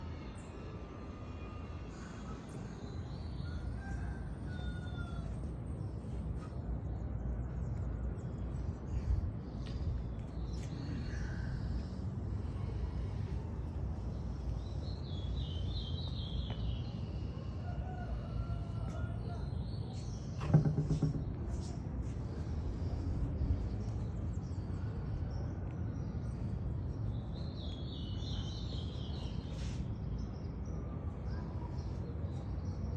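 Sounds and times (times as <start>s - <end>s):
steady low rumble: 5.2s - 20.2s, 21.3s - 28.6s.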